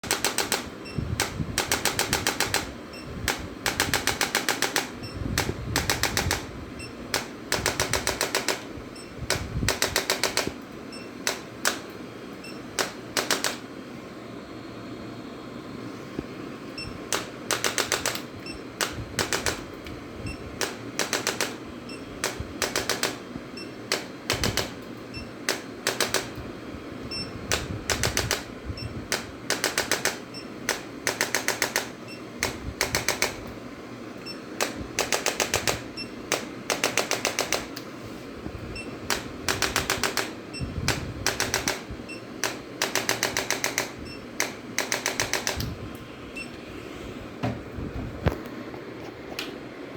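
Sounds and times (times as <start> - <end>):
rapid mechanical clicking: 0.0 - 6.5, 7.1 - 8.7, 9.3 - 10.6, 11.2 - 12.0, 12.7 - 13.6, 17.1 - 23.2, 23.9 - 26.4, 27.5 - 28.5, 29.1 - 33.6, 34.6 - 37.9, 39.0 - 45.8.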